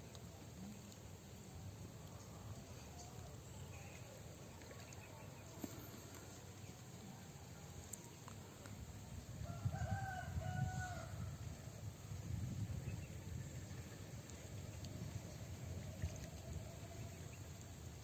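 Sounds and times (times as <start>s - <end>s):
rooster crowing: 9.4s - 11.4s.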